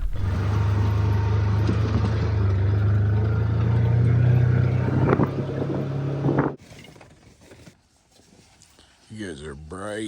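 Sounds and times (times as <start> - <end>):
vehicle engine humming: 0.0 - 6.6.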